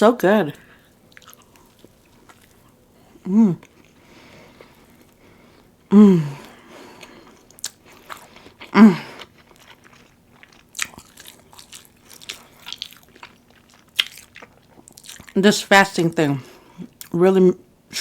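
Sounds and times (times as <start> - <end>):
short falling vocal sounds: 3.2 - 3.6
biting and chewing sandwich: 6.4 - 15.4.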